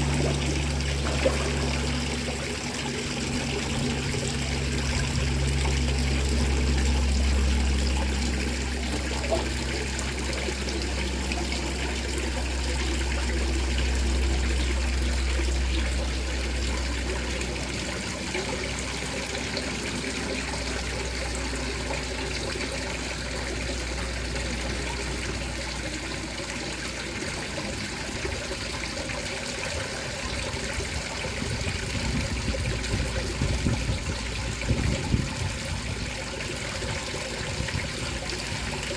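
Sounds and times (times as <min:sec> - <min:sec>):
water trickling: 0:00.0 - 0:38.9
low wind rumble: 0:30.5 - 0:38.8.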